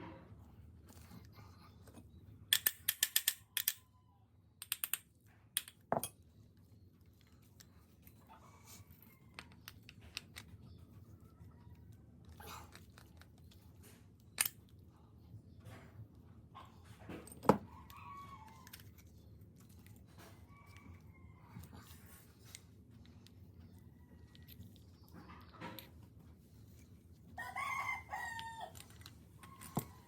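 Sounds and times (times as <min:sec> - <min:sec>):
tools and parts clicking: 0:01.8 - 0:03.9, 0:04.6 - 0:06.2, 0:08.9 - 0:10.6, 0:12.2 - 0:14.8, 0:17.1 - 0:20.9, 0:24.2 - 0:26.0, 0:28.2 - 0:30.0.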